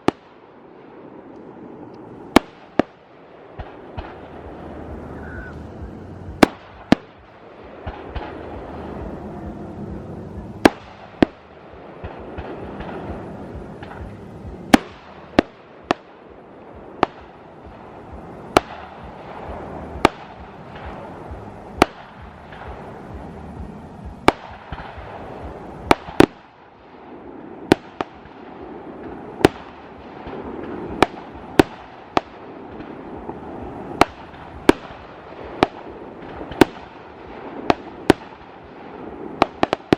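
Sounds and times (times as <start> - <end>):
fireworks crackling and fizzing: 0.0 - 39.9
firework shell bursts: 3.6 - 16.1.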